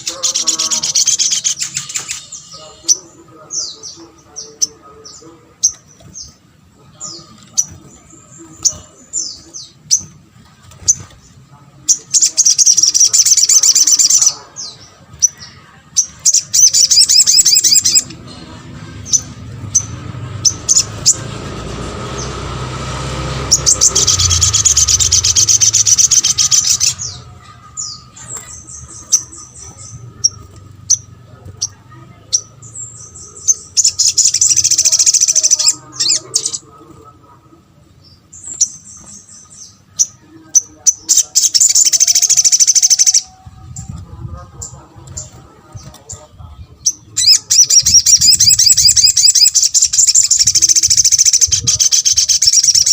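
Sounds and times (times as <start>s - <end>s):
bird calling high sharp chips: 16.0s - 18.1s, 23.4s - 32.6s.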